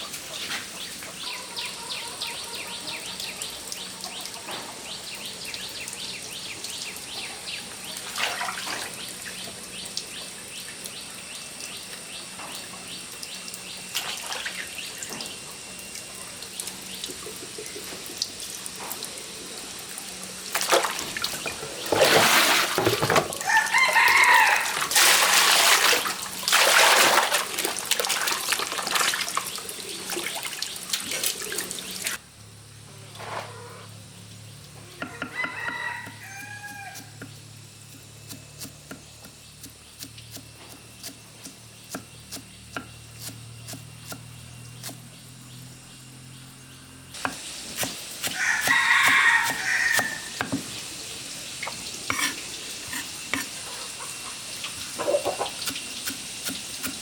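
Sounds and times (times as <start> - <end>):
water splashing and pouring: 8.0 - 9.0, 20.4 - 23.4, 24.1 - 32.2
rooster crowing: 23.3 - 25.0, 34.9 - 37.2, 48.2 - 50.4.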